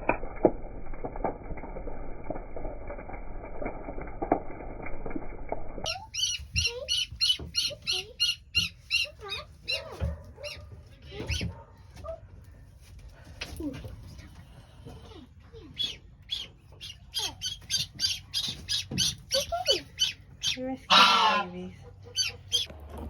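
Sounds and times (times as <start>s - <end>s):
animal high-pitched squeals: 5.9s - 10.6s, 15.8s - 22.7s.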